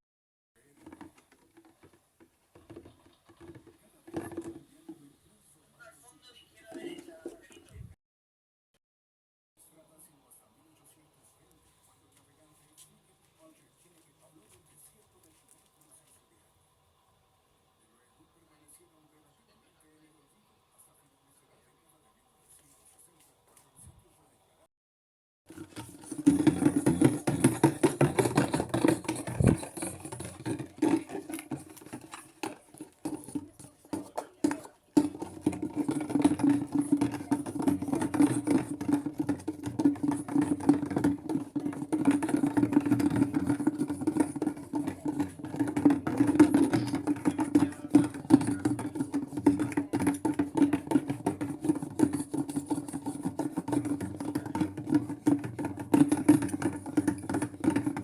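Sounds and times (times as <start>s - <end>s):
washing machine churning: 25.5s - 58.0s.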